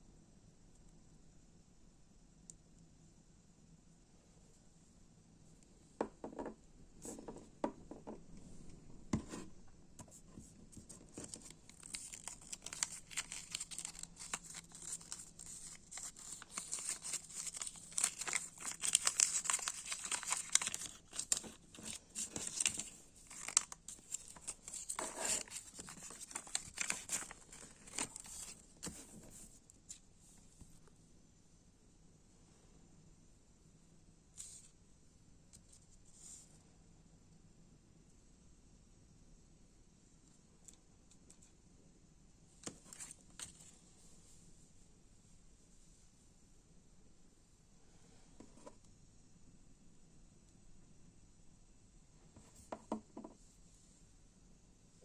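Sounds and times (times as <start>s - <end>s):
wrapping crinkling and tearing: 10.8s - 28.6s.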